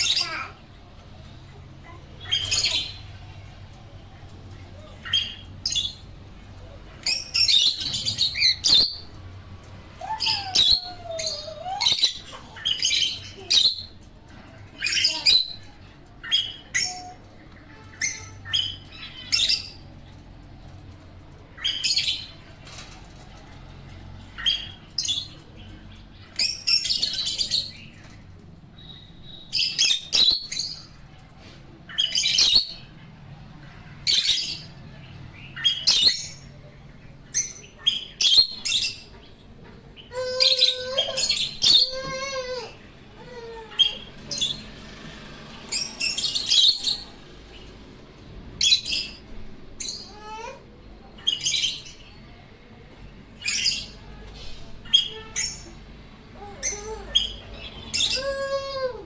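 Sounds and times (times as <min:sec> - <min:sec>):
birds chirping: 0:00.0 - 0:59.0.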